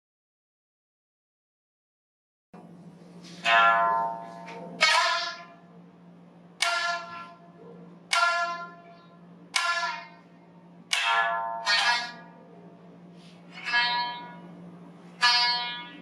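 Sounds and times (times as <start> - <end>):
lute strings struck with plectrum: 3.4 - 5.7, 6.6 - 7.5, 8.1 - 10.3, 10.9 - 12.6, 13.5 - 16.0.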